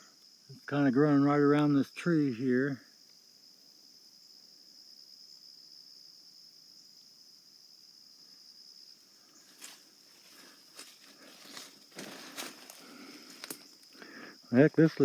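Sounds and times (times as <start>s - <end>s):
crickets droning: 0.0s - 15.0s
crackling rustles in dry leaves: 9.4s - 14.0s.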